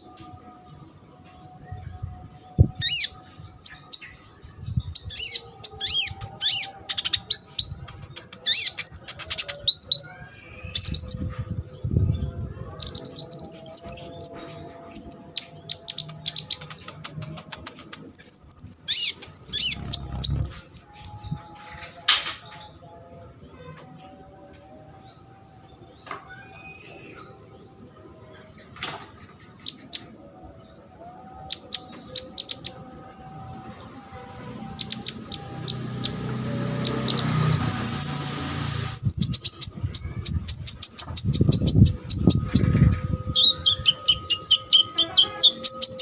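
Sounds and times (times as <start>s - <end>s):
sunbird singing: 1.6s - 16.9s, 18.0s - 22.9s, 29.4s - 46.0s
rapid bird trill: 18.1s - 20.5s
high bird buzz: 18.1s - 21.4s.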